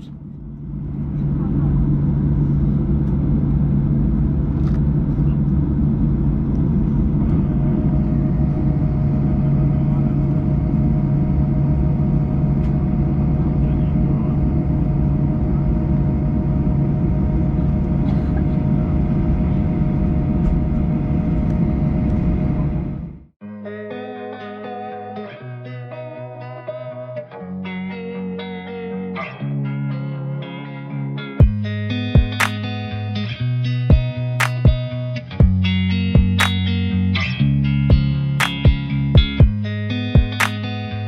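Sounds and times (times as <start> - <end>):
airplane cabin engine drone: 0.0 - 23.4, 31.4 - 37.0, 37.7 - 41.0
steady high whine: 0.0 - 23.4, 31.4 - 41.0.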